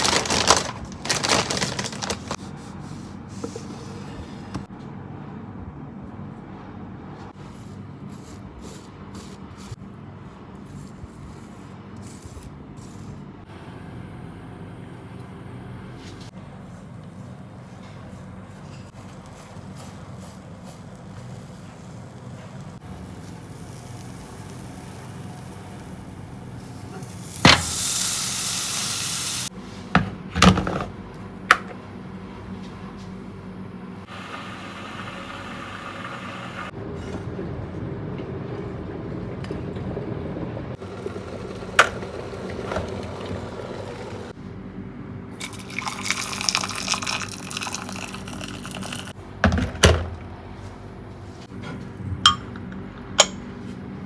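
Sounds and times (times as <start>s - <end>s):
water tap running: 40.6s - 44.4s.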